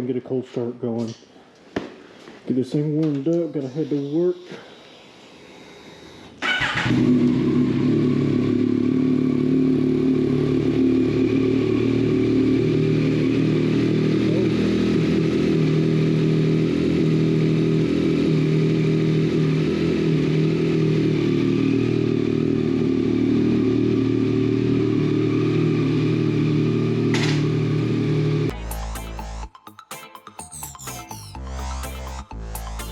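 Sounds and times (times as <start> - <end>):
motorcycle engine starting and idling: 6.4 - 29.4.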